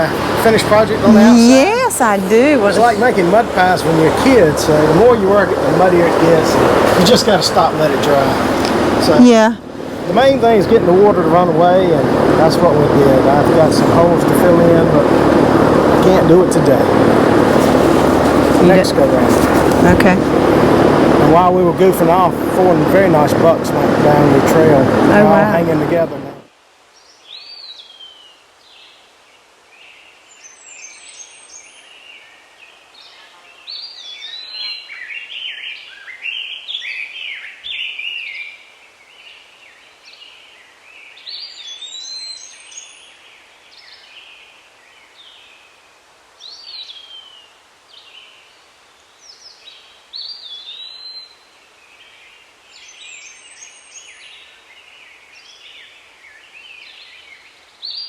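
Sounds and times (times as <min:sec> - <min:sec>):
birds chirping and chattering: 0:00.0 - 0:26.4.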